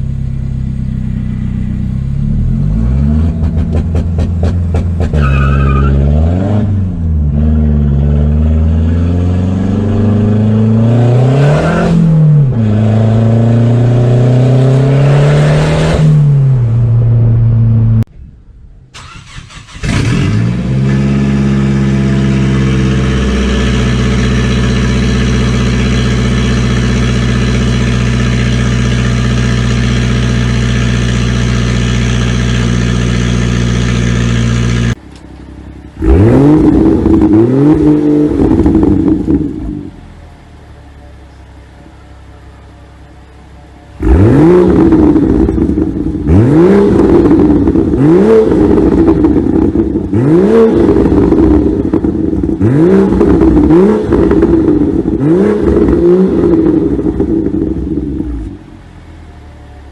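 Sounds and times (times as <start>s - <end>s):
car engine revving: 0.0s - 18.1s, 19.0s - 40.2s, 43.9s - 58.9s
engine starting and idling: 18.9s - 20.5s.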